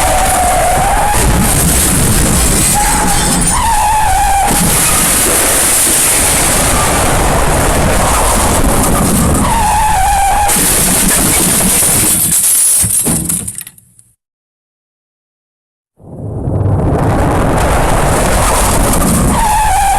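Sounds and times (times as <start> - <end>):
distorted loud noise wash: 0.0 - 11.4, 16.8 - 19.9
short squealing tone: 0.0 - 13.0.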